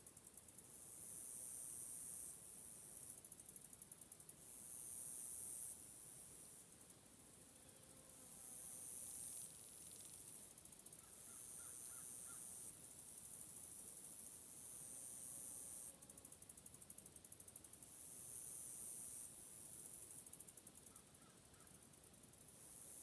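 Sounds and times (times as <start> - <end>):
insects buzzing and trilling: 8.4 - 23.0.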